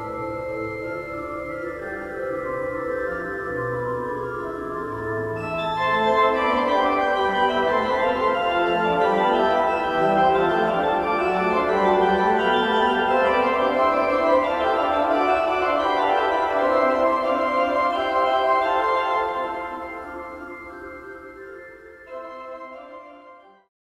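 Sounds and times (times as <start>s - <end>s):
organ playing: 0.0s - 23.6s.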